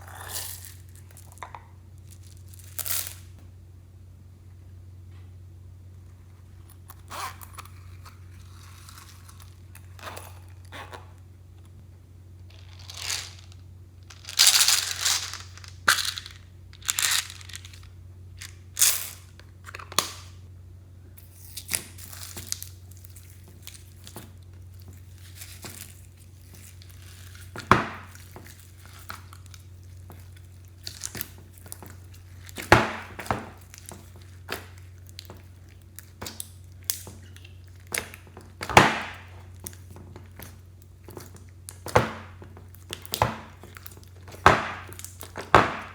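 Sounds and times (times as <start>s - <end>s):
slime crackling and tearing: 21.3s - 38.2s, 42.7s - 45.9s.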